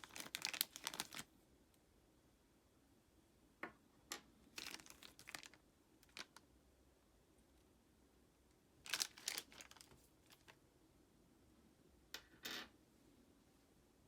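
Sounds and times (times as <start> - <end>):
packaging crinkling and rustling: 0.0 - 1.3, 4.5 - 6.4, 8.8 - 10.6.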